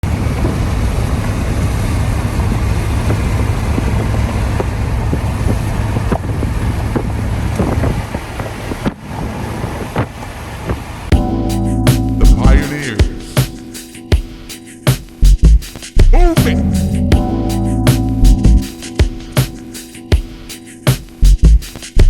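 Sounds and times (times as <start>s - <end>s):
wind buffeting microphone: 0.0s - 11.1s.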